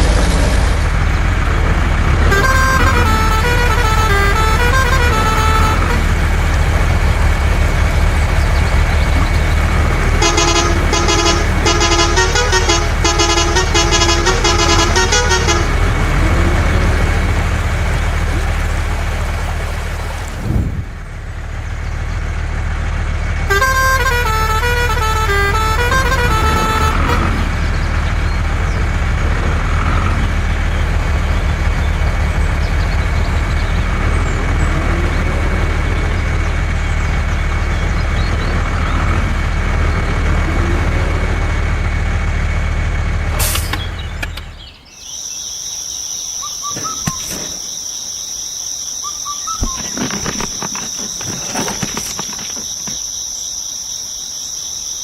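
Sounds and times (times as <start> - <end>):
truck engine rumbling: 0.0 - 54.8
crickets chirring: 44.8 - 55.0.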